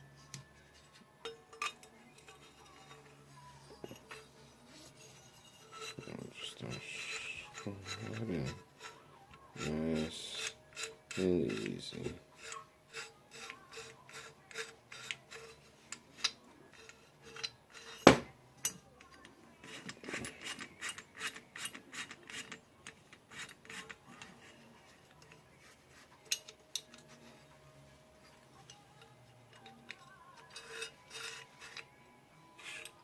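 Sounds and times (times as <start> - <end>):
threads scraping: 0.6 - 18.3, 19.6 - 33.0
sharp knock: 18.1 - 18.3.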